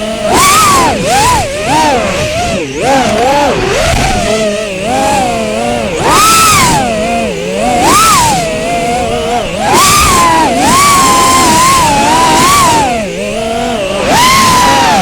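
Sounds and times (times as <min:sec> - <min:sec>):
drone motors whining: 0:00.0 - 0:15.0.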